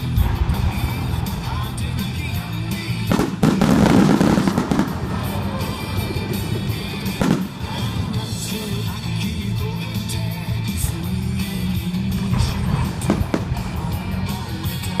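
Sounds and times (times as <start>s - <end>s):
firework bangs: 0.0s - 8.5s, 12.3s - 14.1s
firework crackling: 0.0s - 8.9s, 12.6s - 14.0s.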